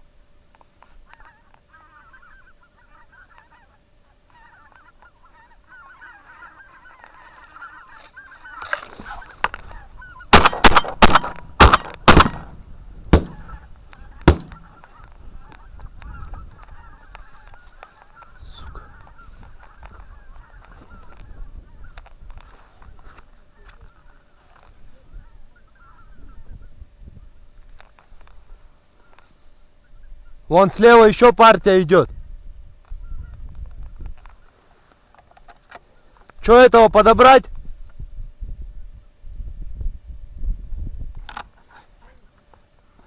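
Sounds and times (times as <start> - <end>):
geese honking: 0.8 - 12.4, 13.2 - 26.8, 27.8 - 31.8, 34.2 - 37.4
shotgun shots: 10.3 - 13.5, 14.2 - 14.8.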